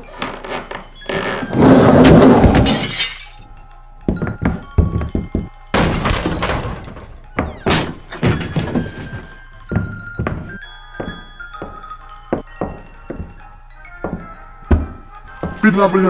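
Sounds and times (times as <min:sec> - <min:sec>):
background music: 0:00.0 - 0:16.0
knocks and thuds: 0:04.1 - 0:15.6.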